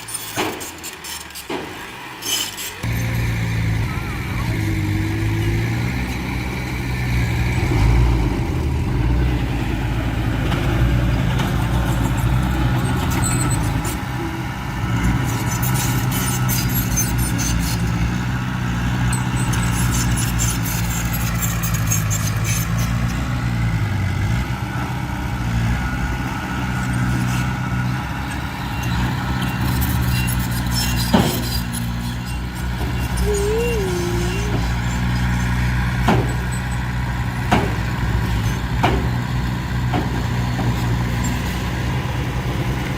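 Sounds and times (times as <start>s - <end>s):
heavy diesel engine running: 0.0s - 42.9s.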